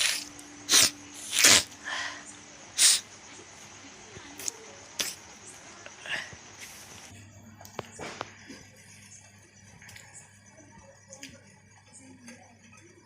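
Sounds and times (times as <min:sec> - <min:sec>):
person sneezing: 0:00.0 - 0:01.7, 0:02.8 - 0:03.0.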